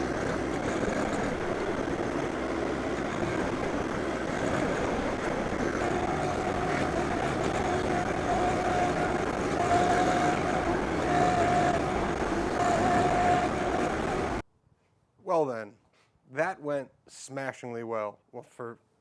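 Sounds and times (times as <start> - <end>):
engine whine: 0.0 - 14.4
tractor diesel engine running: 0.0 - 14.4.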